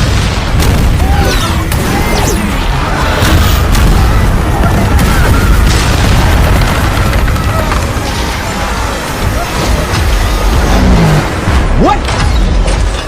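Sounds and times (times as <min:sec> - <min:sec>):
booming impacts: 0:00.0 - 0:13.0
background music: 0:07.4 - 0:13.0.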